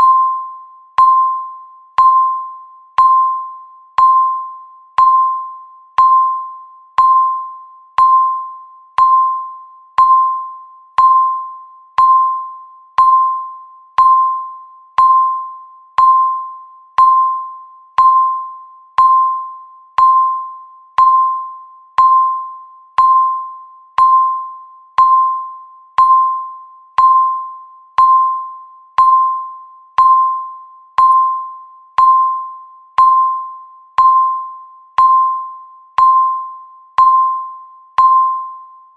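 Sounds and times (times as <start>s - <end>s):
electronic timer beeps: 0.0s - 38.9s.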